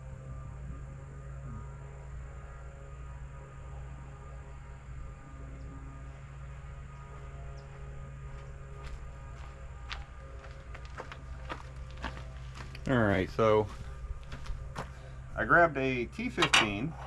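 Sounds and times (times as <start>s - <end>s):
faint high whine: 0.0s - 17.0s
steady low hum: 0.0s - 17.0s.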